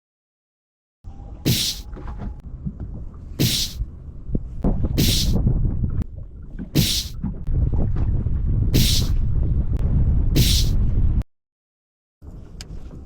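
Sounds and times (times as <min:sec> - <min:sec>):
spray splashing on hull: 0:01.5 - 0:01.9, 0:03.4 - 0:03.8, 0:05.0 - 0:05.4, 0:06.8 - 0:07.2, 0:08.8 - 0:09.2, 0:10.4 - 0:10.8
wind buffeting microphone: 0:01.5 - 0:11.2.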